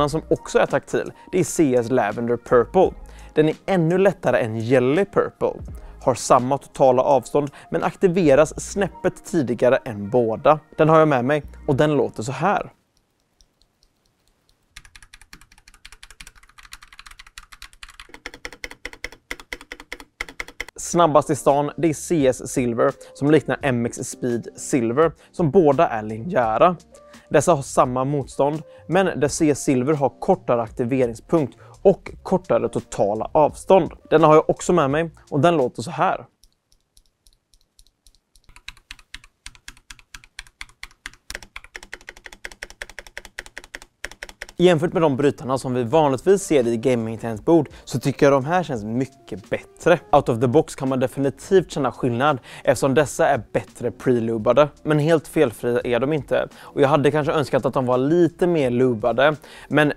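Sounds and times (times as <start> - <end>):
mechanical keyboard typing: 13.3 - 20.8, 36.4 - 44.6.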